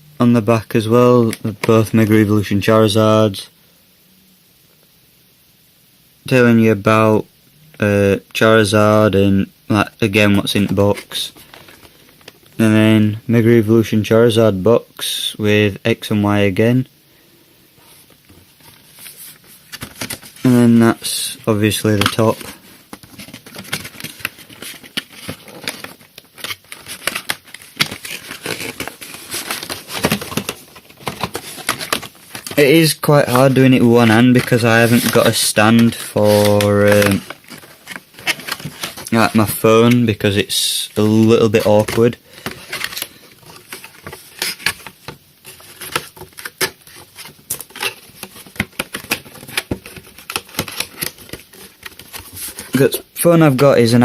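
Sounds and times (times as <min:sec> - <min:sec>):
cardboard box rustling and scraping: 0:21.9 - 0:39.5.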